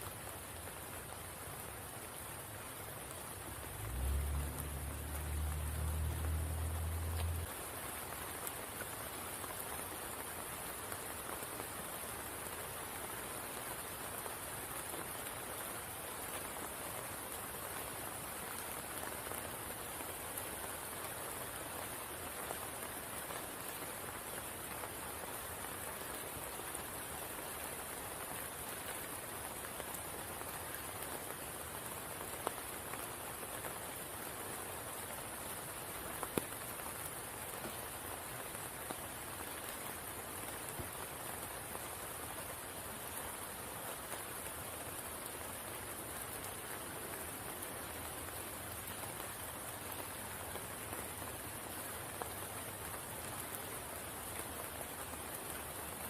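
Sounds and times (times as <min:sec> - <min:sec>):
rain falling on a pool: 0:00.0 - 0:56.0.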